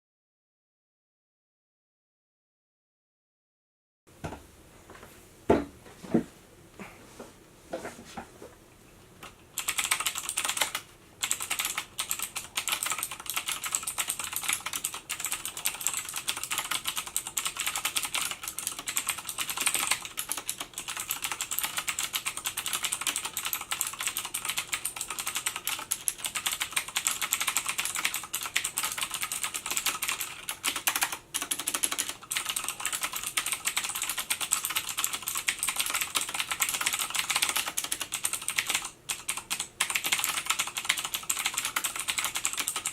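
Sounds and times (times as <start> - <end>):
fast clicky keyboard typing: 9.6 - 42.9.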